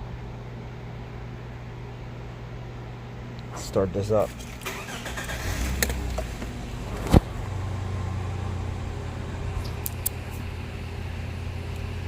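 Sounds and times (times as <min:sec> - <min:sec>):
car engine idling: 0:04.4 - 0:12.0.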